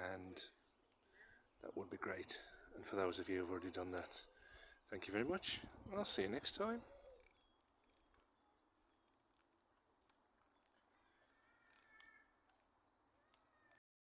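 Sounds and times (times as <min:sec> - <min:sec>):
faint outdoor ambience: 0:00.0 - 0:13.8
faint bird call: 0:10.6 - 0:12.6.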